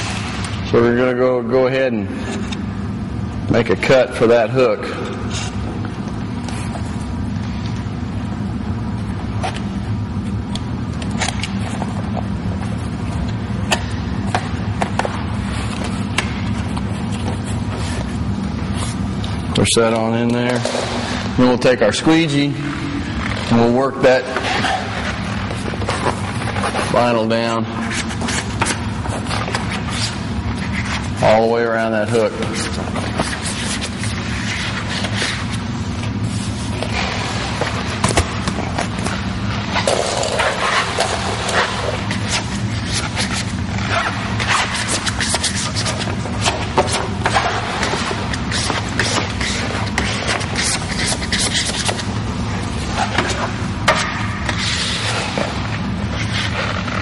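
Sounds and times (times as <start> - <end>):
low mechanical hum: 0.0 - 57.0
vinyl being cut and handled: 32.0 - 57.0.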